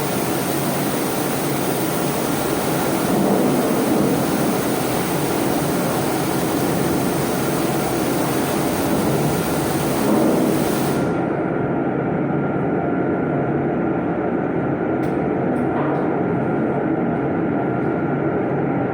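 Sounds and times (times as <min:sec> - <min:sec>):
water jet hissing: 0:00.0 - 0:11.4.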